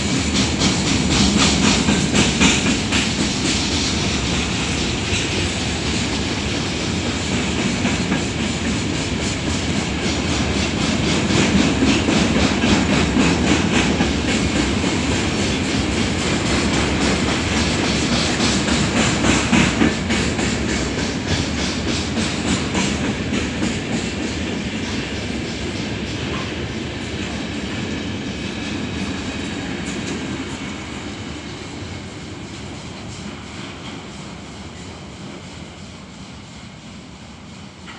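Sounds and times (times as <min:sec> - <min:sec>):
wheels clacking over rail joints: 0:00.0 - 0:26.8
freight train rumbling past: 0:00.0 - 0:37.9.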